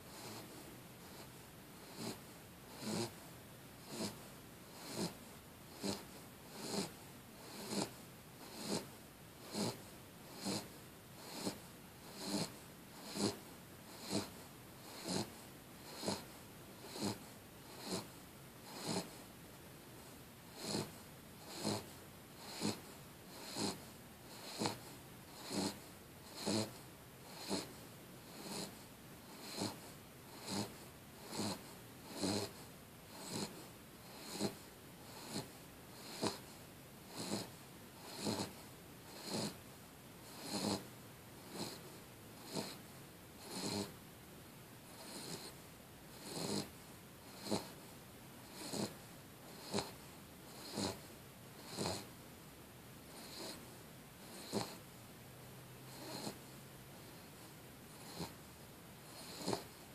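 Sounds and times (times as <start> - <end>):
person snoring: 1.1 - 3.2, 3.9 - 4.2, 4.8 - 6.0, 6.6 - 8.9, 9.5 - 9.8, 10.4 - 14.3, 14.9 - 15.3, 15.9 - 16.2, 16.9 - 17.2, 17.8 - 18.1, 18.7 - 19.2, 20.6 - 20.9, 21.5 - 22.8, 23.4 - 23.8, 24.4 - 24.8, 25.4 - 25.8, 26.4 - 26.7, 27.3 - 27.7, 29.4 - 36.4, 37.1 - 38.5, 39.1 - 39.6, 40.3 - 40.9, 43.4 - 43.9, 46.2 - 46.7, 47.4 - 47.7, 48.5 - 48.9, 49.6 - 50.0, 50.6 - 51.0, 51.7 - 52.1, 54.3 - 54.8, 55.9 - 56.4, 59.2 - 59.7.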